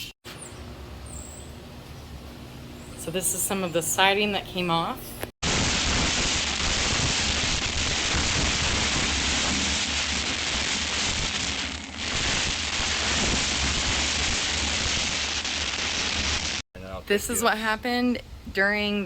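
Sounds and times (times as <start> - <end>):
heavy rain hissing: 5.4 - 16.6
wind rumbling: 5.4 - 16.6.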